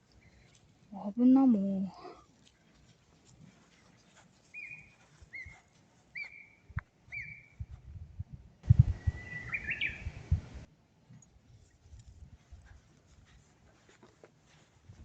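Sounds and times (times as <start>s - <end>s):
songbird chirping: 4.0s - 7.8s, 8.8s - 10.4s
bird trill: 4.5s - 7.6s, 9.0s - 10.2s.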